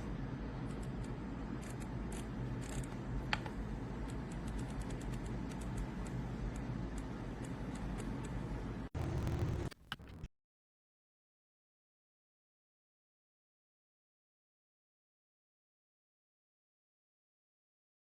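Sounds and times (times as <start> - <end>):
low rumble: 8.9 - 10.3.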